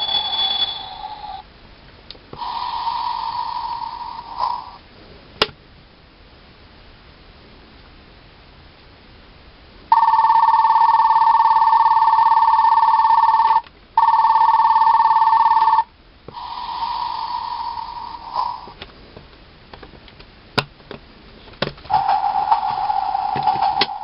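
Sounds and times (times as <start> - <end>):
electric bell ringing: 0.0 - 1.4, 9.9 - 15.9
quiet tone: 0.0 - 1.5.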